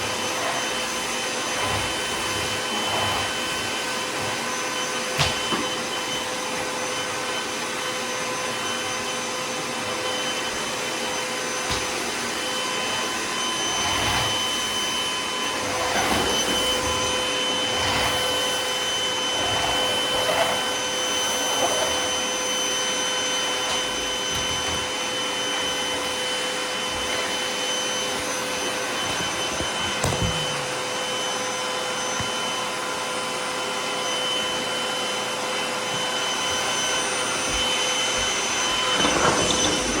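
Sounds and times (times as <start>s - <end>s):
vacuum cleaner motor whine: 0.0s - 40.0s.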